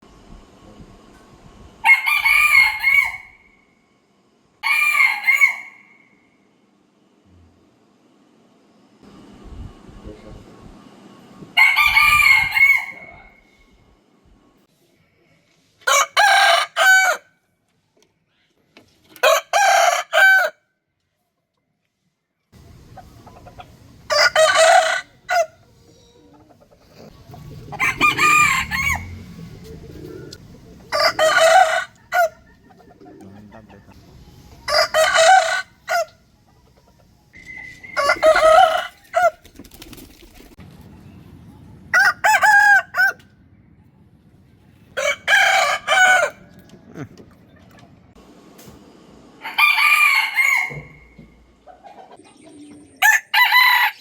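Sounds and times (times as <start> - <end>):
rooster crowing: 1.8 - 3.6, 4.6 - 6.2, 11.6 - 13.5, 15.9 - 17.3, 19.2 - 20.6, 24.1 - 25.7, 27.0 - 34.0, 34.7 - 36.2, 37.4 - 39.4, 41.9 - 43.2, 44.9 - 46.6, 49.4 - 51.3, 53.0 - 54.0.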